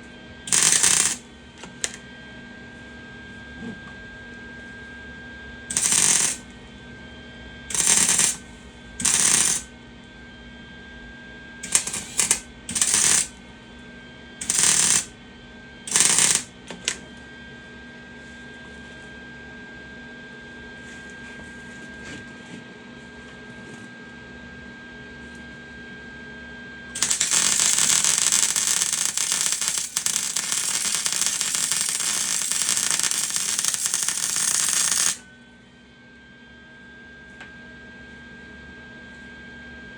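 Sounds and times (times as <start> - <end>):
arc welding noise: 0.5 - 2.0, 5.7 - 6.5, 7.7 - 9.7, 11.6 - 13.4, 14.4 - 15.1, 15.9 - 17.0, 27.0 - 35.2
welder humming: 0.5 - 2.0, 5.7 - 6.5, 7.7 - 9.7, 11.6 - 13.4, 14.4 - 15.1, 15.9 - 17.0, 27.0 - 35.2.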